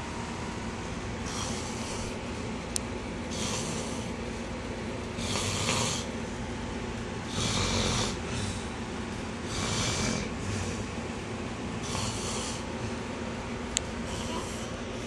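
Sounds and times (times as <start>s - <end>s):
person snoring: 1.2s - 2.2s, 3.3s - 4.2s, 5.2s - 6.1s, 7.3s - 8.8s, 9.5s - 11.0s, 11.8s - 13.0s, 14.0s - 14.8s.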